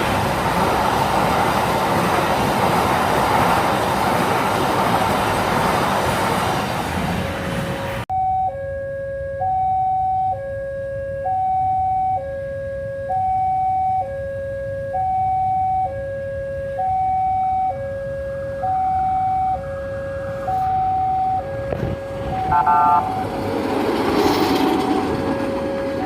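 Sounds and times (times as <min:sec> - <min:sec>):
passing train: 0:00.0 - 0:08.1, 0:17.6 - 0:26.0
level crossing warning alarm: 0:08.1 - 0:23.4.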